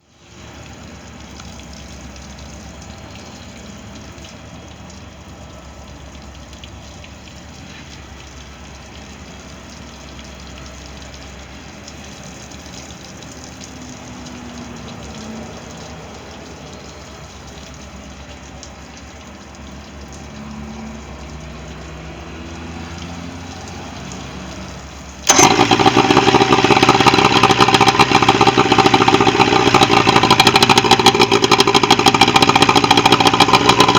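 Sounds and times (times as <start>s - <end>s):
loud rough mechanical noise: 25.1s - 33.9s
boat motor humming: 25.2s - 33.9s.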